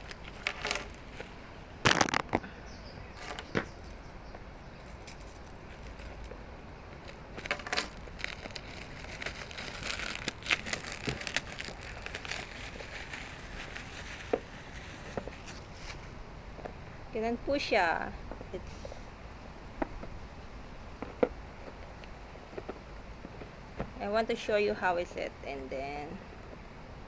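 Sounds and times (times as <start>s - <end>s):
plastic wrap crackling: 7.0s - 16.2s.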